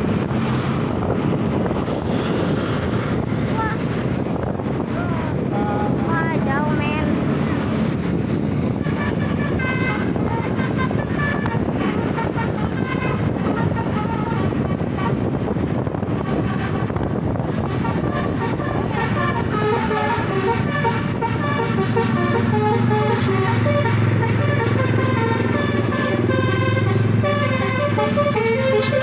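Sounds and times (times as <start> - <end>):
road traffic noise: 0.0 - 29.0
bus horn playing a tune: 8.6 - 29.0.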